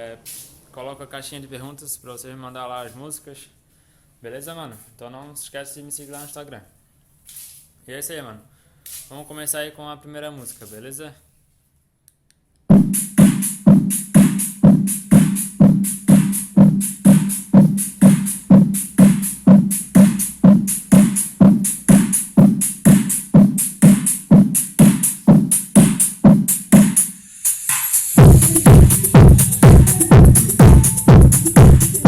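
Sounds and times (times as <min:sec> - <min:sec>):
heavy bass section: 0:12.7 - 0:25.5, 0:28.0 - 0:32.0
funk music on car sound system: 0:12.7 - 0:32.0
repeating electronic beat: 0:12.7 - 0:32.0.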